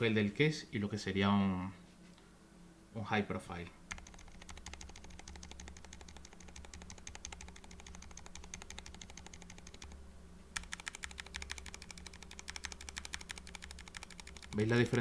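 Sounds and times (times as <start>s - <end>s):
fast typing on mechanical keyboard: 3.9s - 10.0s, 10.6s - 15.0s.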